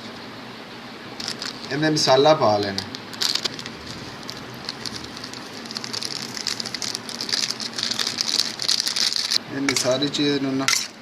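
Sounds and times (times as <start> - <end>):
food being mixed in a bowl: 2.6 - 10.0.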